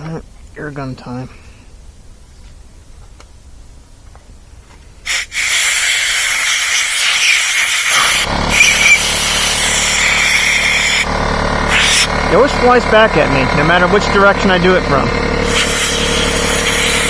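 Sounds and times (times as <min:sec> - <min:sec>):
deeper air rush: 0:04.4 - 0:17.0
air blow gun hissing: 0:05.0 - 0:12.4, 0:15.4 - 0:17.0.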